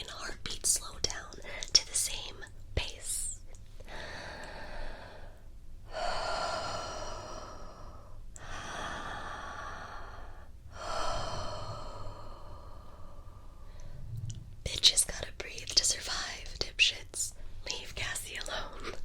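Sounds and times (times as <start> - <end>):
woman breathing slowly: 3.7 - 14.4.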